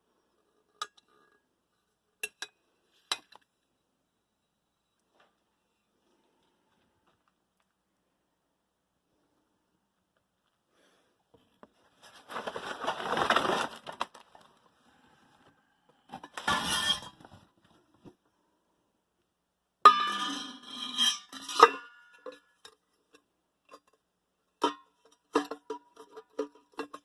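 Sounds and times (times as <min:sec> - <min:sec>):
metal parts scraping: 0:16.2 - 0:17.2.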